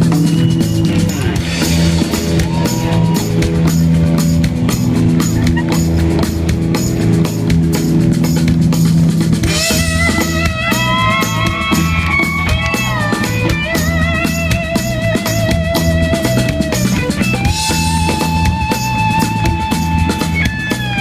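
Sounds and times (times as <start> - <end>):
rock band drums and bass: 0.0 - 21.0.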